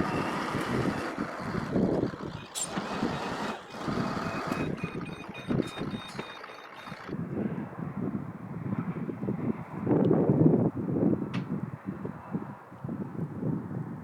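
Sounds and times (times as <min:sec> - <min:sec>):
diesel engine working: 0:00.0 - 0:07.2
reversing alarm beeping: 0:00.0 - 0:07.2.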